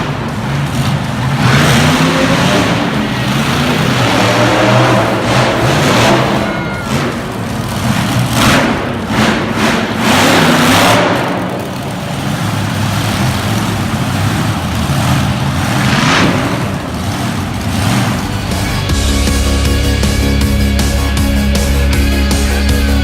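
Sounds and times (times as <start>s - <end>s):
truck engine revving hard: 0.0s - 23.0s.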